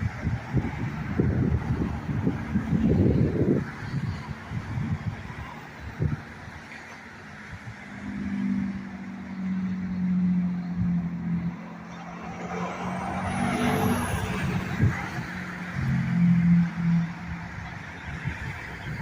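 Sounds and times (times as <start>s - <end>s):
car driving past: 11.3s - 16.9s.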